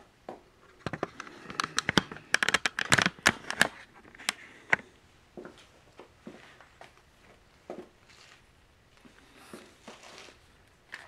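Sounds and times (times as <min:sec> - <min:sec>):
hard objects clicking and knocking: 0:00.8 - 0:04.9.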